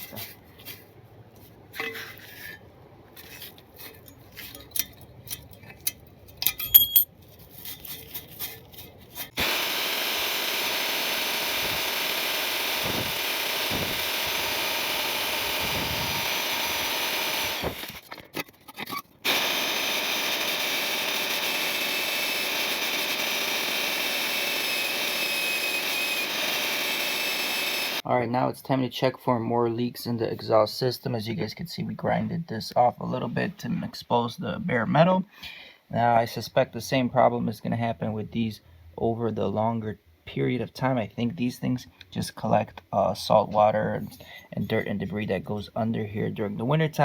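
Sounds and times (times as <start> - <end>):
metal tools clinking: 3.2 - 9.2
power grinder grinding metal: 9.3 - 18.1, 19.3 - 28.0.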